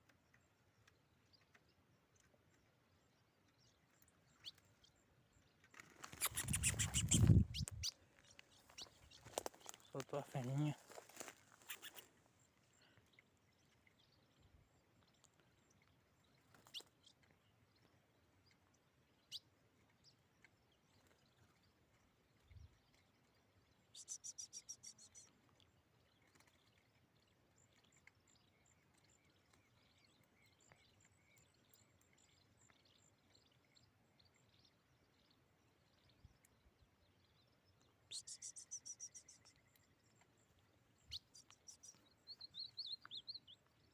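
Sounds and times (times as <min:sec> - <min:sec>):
songbirds chirping: 0:00.0 - 0:43.9.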